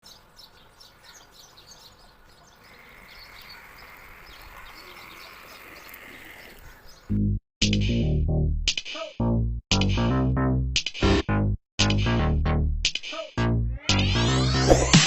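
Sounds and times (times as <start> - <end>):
birds chirping: 0.0 - 7.1.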